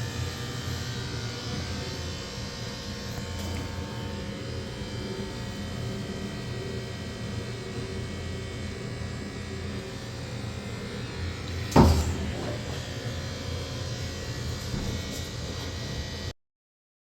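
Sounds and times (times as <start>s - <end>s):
washing machine running: 0.0s - 16.3s
loud knock: 11.7s - 12.8s.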